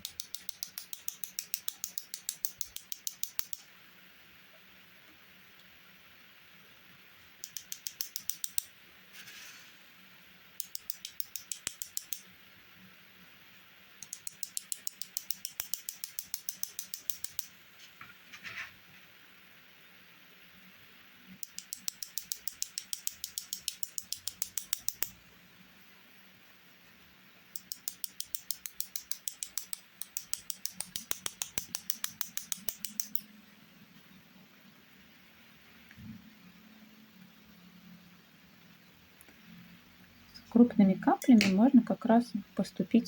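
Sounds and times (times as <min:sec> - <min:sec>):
paintbrush tapping: 0:07.4 - 0:08.7, 0:10.6 - 0:12.2, 0:27.6 - 0:33.3.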